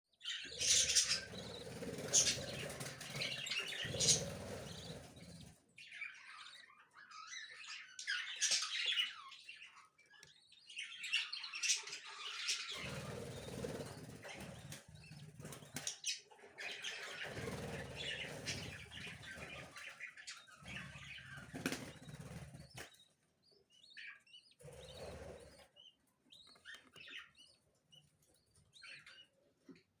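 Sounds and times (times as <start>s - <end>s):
parrots fluttering and rustling: 0.6s - 5.5s, 16.9s - 20.0s.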